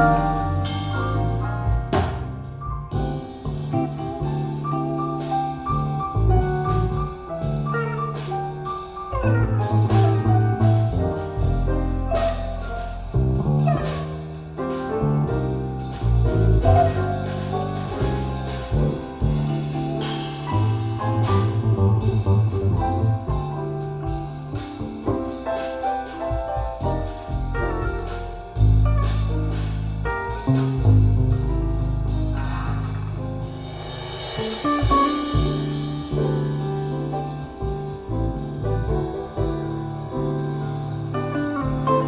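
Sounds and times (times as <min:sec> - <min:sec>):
jazz piano bass and drums: 0:00.0 - 0:42.0
prominent bass line: 0:00.0 - 0:42.0.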